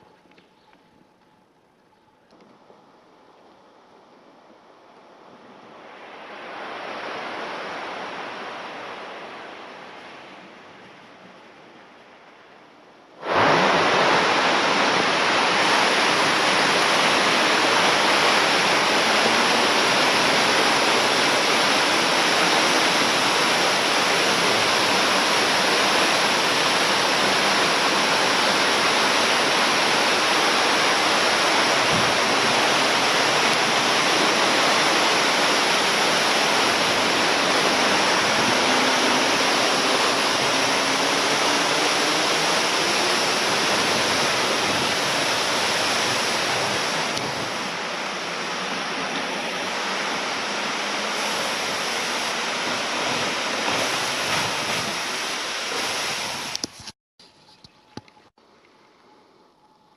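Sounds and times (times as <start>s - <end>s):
snow avalanching off a roof: 13.2s - 56.6s.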